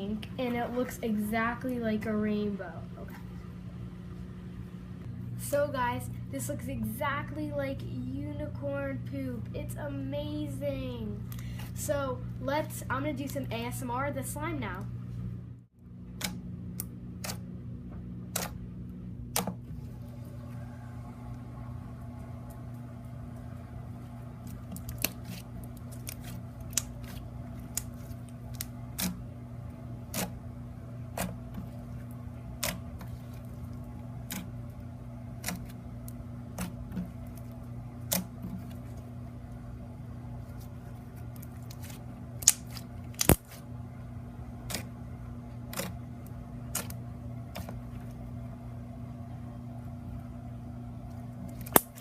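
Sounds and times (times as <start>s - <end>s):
steady low hum: 0.0s - 52.0s
slime squished by hand: 24.4s - 29.2s, 40.4s - 43.6s, 46.7s - 48.2s
sharp clicks and pops: 42.4s - 43.6s.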